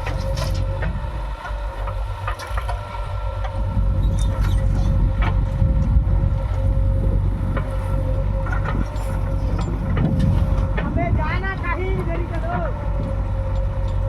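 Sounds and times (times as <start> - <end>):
diesel engine rumbling: 0.0 - 14.0
machinery knocks: 8.5 - 13.2.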